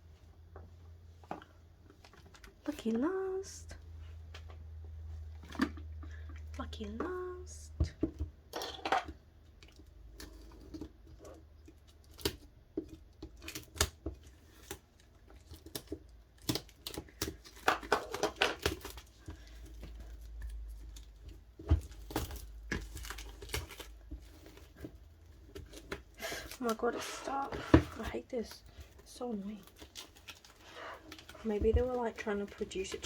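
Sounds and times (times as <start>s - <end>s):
plastic wrapping crinkling: 13.2s - 33.0s.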